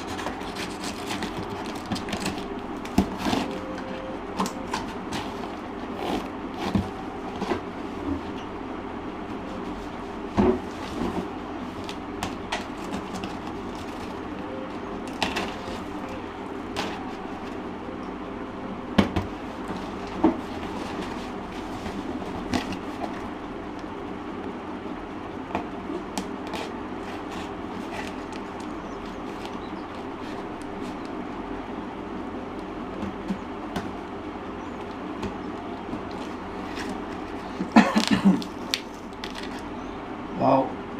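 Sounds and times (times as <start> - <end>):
steady background hum: 0.0 - 40.9.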